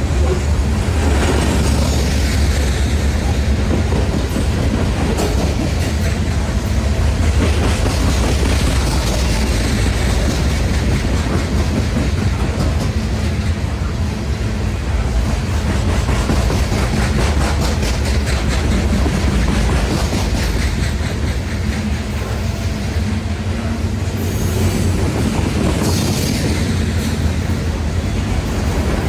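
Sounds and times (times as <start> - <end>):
train rumble: 0.0 - 29.0
wheels clicking over rail joints: 15.2 - 22.4.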